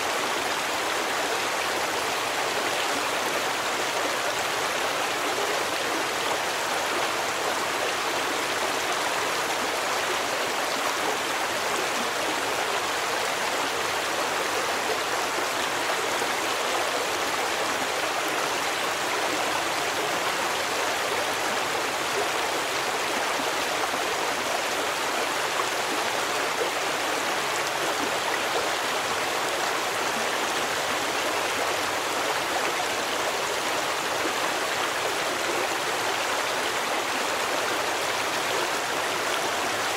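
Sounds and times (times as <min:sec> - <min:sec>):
stream of water running: 0:00.0 - 0:39.9.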